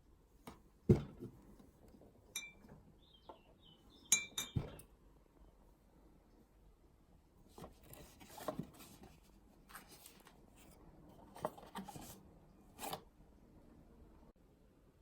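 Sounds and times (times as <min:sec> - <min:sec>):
glassware clinking: 0:02.3 - 0:02.7, 0:04.1 - 0:04.8.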